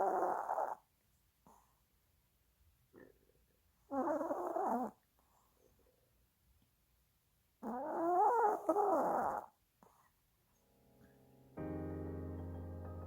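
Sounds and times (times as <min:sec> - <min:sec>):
dog whimpering in sleep: 0:00.0 - 0:00.9, 0:03.9 - 0:05.0, 0:07.6 - 0:09.6.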